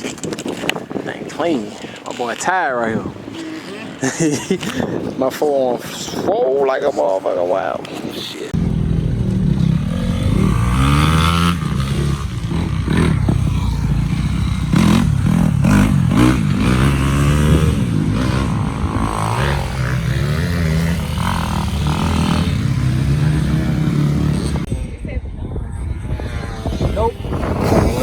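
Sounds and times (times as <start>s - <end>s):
dirt bike engine revving: 8.6s - 24.8s, 25.8s - 28.0s.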